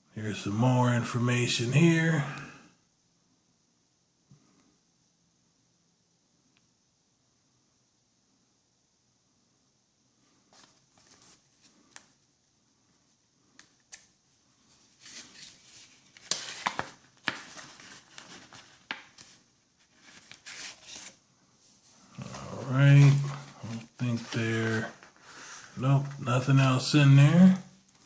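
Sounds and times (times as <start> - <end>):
cardboard and paper rustling: 10.5 - 12.2, 14.6 - 26.2.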